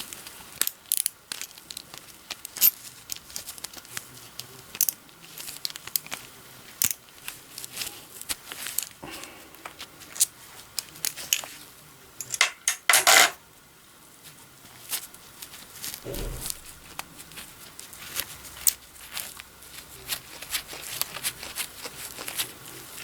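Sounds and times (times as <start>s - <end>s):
brief metal rattle: 16.0s - 17.5s.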